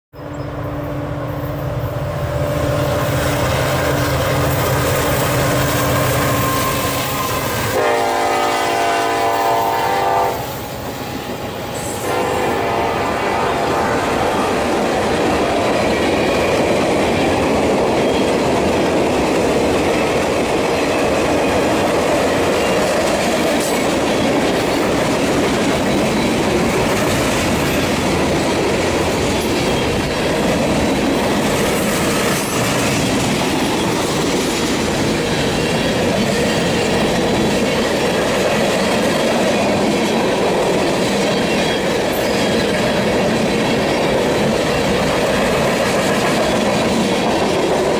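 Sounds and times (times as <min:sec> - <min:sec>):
train wheels clattering on rail: 0:01.2 - 0:12.3, 0:13.6 - 0:47.9.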